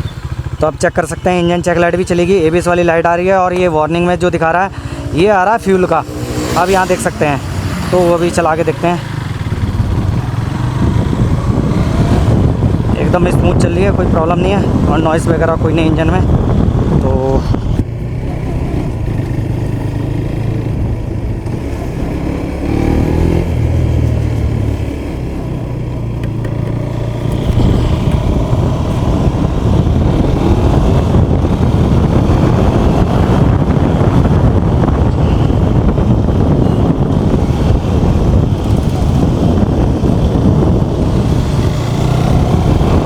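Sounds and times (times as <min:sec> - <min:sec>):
motorcycle engine revving: 0:00.0 - 0:43.0
wind rushing over microphone: 0:01.3 - 0:43.0.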